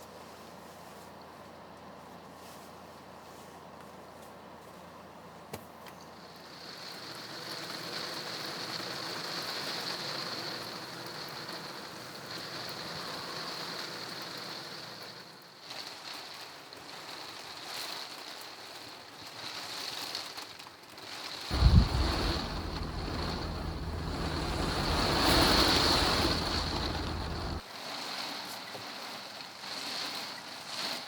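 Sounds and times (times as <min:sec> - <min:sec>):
heavy rain falling: 0:21.5 - 0:27.6.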